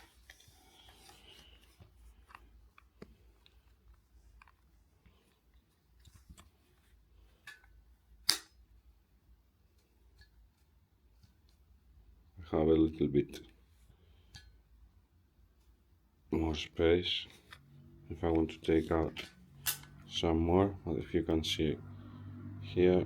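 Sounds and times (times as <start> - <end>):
sharp snap: 8.2 - 8.6.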